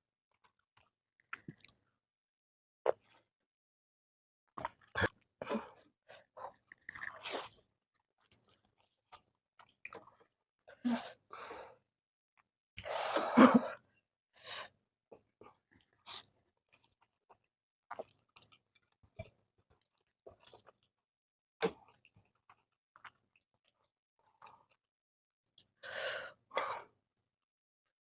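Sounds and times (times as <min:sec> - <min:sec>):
chewing and mouth noises: 0:06.7 - 0:07.6.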